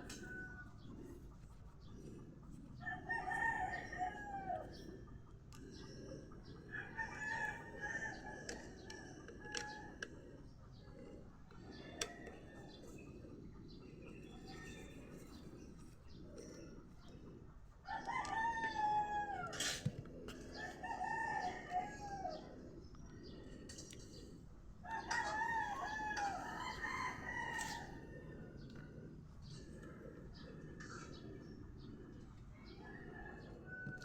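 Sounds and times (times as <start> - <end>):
rooster crowing: 2.8 - 4.7, 17.9 - 19.6, 20.6 - 22.4, 24.8 - 28.0.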